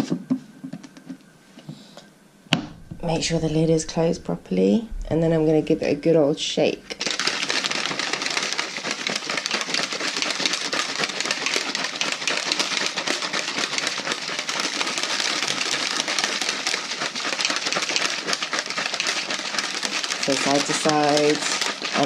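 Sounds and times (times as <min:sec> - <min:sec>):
shaker bottle rattling slosh: 0:02.8 - 0:04.4, 0:06.9 - 0:22.0.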